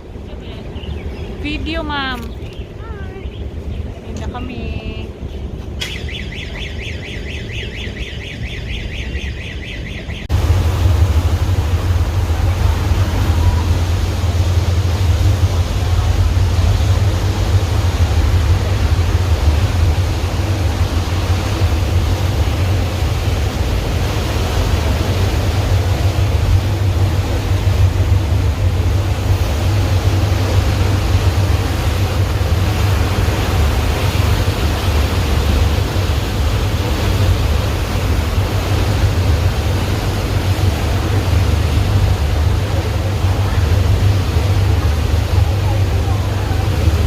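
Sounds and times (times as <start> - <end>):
boat engine droning: 0.0 - 47.0.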